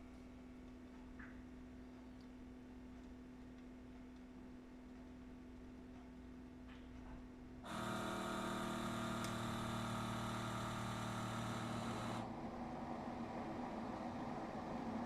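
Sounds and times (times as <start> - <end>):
coffee machine hissing: 7.7 - 15.0
coffee machine humming: 7.7 - 15.0.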